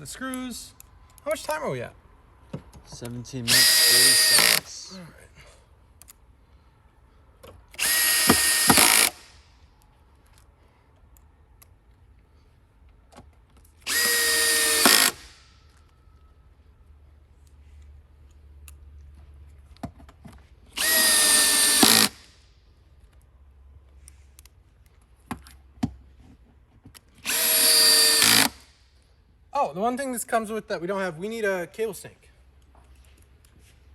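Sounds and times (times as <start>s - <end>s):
power drill driving screws: 3.5s - 4.7s, 7.7s - 9.4s, 13.8s - 15.5s, 20.7s - 22.3s, 27.2s - 28.7s.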